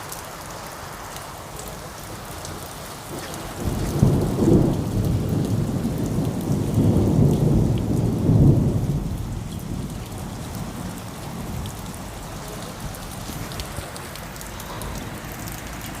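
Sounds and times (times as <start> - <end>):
steady rain: 0.0 - 16.0
thunder rumble: 3.1 - 15.4.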